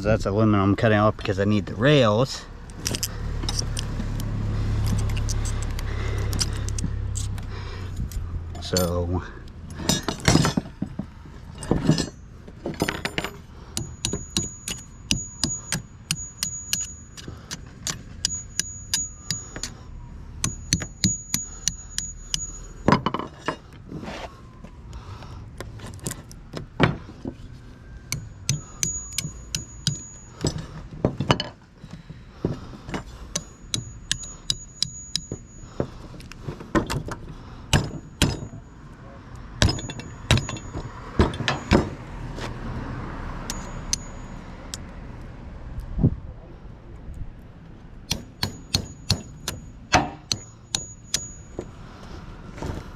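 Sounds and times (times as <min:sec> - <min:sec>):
hammer striking metal: 0:12.8 - 0:19.8, 0:20.4 - 0:23.3, 0:28.1 - 0:30.6, 0:33.3 - 0:35.8, 0:37.7 - 0:38.7, 0:39.6 - 0:42.0, 0:43.4 - 0:44.4, 0:48.1 - 0:51.7.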